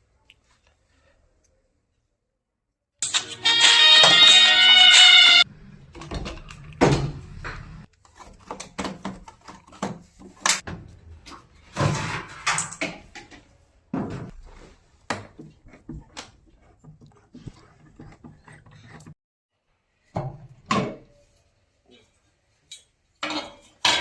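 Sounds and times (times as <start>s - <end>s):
objects knocking and clattering: 5.9s - 19.2s, 23.2s - 24.0s.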